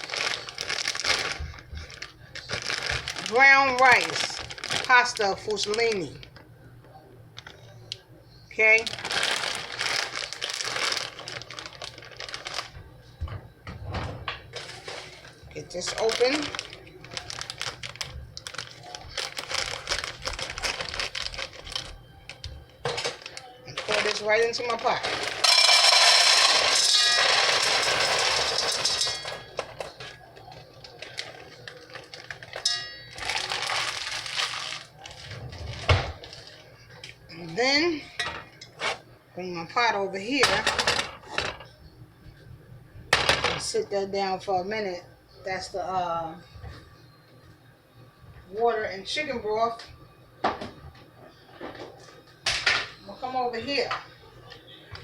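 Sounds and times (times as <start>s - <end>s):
plastic package crinkling: 0.0s - 6.4s, 8.6s - 12.8s, 14.6s - 36.7s
dry pasta pouring into a pot: 25.0s - 29.2s, 33.2s - 35.1s
pasta clinking in a pot: 25.0s - 29.9s, 32.3s - 34.8s.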